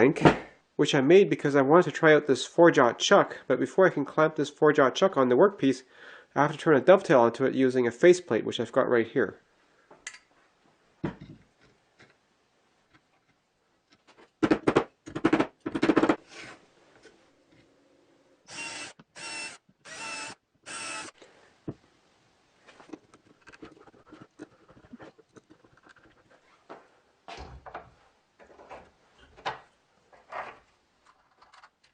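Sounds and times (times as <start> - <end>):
power drill whirring: 18.5 - 21.2.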